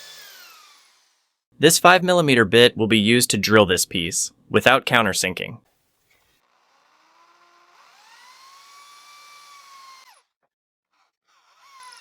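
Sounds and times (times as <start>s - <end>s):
power drill drilling wood: 0.0s - 1.4s, 5.7s - 12.0s.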